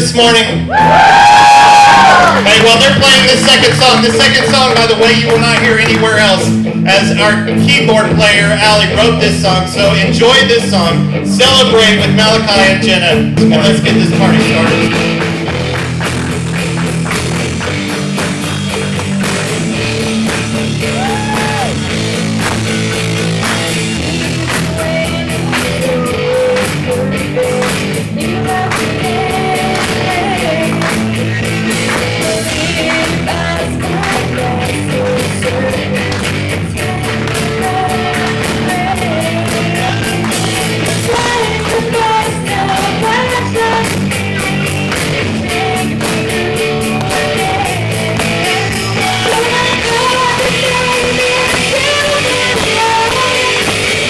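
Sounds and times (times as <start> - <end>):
steady drum beat: 0.0 - 54.0
worship band playing rock song: 0.0 - 54.0
lead vocal singing: 24.0 - 54.0.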